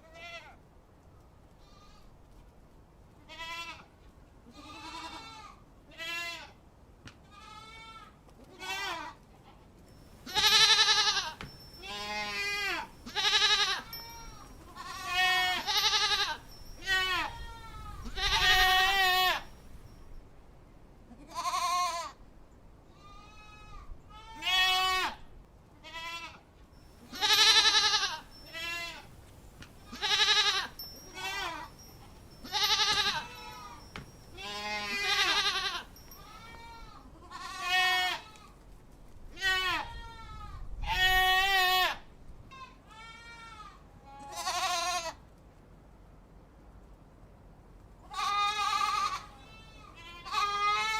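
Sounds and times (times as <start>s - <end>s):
goats bleating: 10.2s - 19.5s, 27.1s - 29.1s, 29.8s - 38.4s, 48.1s - 50.9s.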